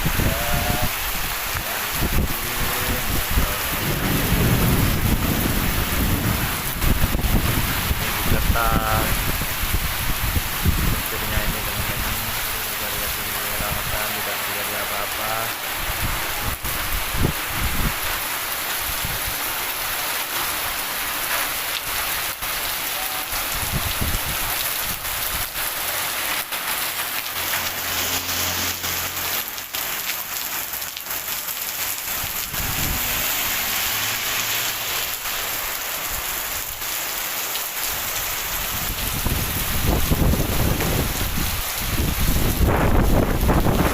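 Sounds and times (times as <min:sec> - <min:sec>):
low rumbles: 0:00.0 - 0:18.0, 0:31.9 - 0:35.8
heavy rain pouring: 0:00.0 - 0:43.9.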